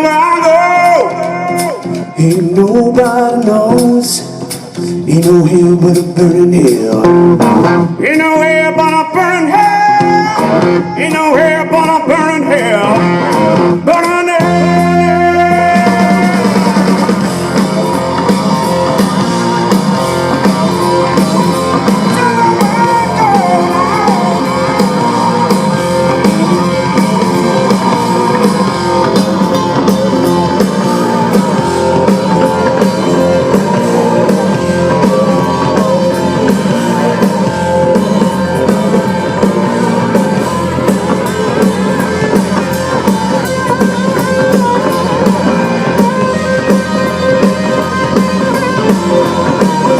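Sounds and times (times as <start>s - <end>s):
bass guitar: 0.0s - 49.9s
drums: 0.0s - 49.9s
electric guitar bending notes: 0.0s - 49.9s.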